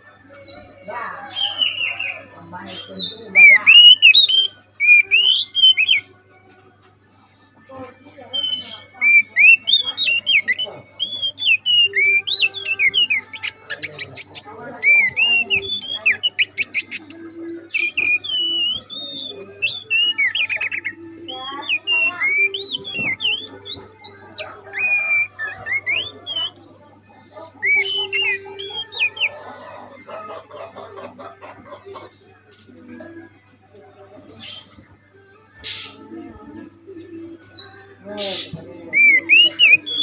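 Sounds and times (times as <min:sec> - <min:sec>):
bird singing whistled phrases: 0:01.3 - 0:06.1, 0:08.3 - 0:26.7, 0:27.6 - 0:29.8, 0:34.2 - 0:34.7, 0:37.4 - 0:40.0.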